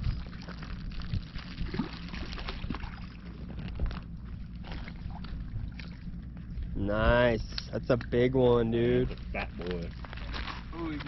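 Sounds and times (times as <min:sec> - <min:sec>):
water lapping at shore: 0:00.0 - 0:06.8.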